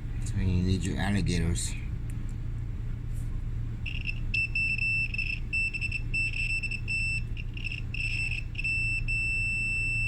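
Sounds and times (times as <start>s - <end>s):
multimeter continuity beeping: 3.8s - 10.0s.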